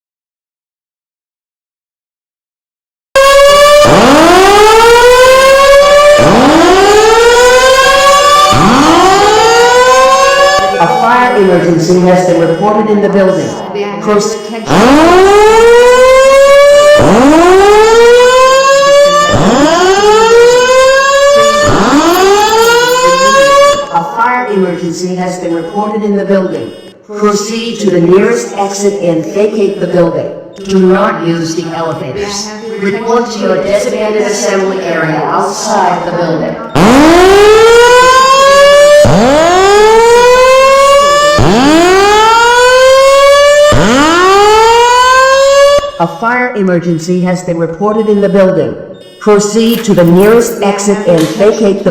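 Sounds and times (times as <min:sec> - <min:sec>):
fire alarm whoop siren: 0:03.2 - 0:13.7, 0:14.3 - 0:28.2, 0:36.6 - 0:46.3, 0:48.0 - 0:51.1.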